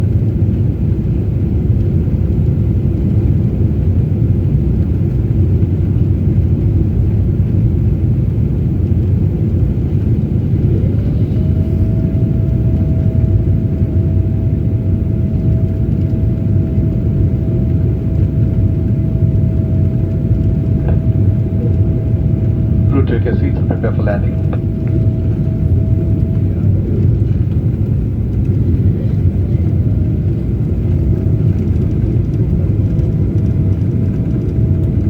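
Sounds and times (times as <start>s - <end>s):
jet airliner rumble: 0.0s - 35.0s
whining tone: 10.4s - 28.8s.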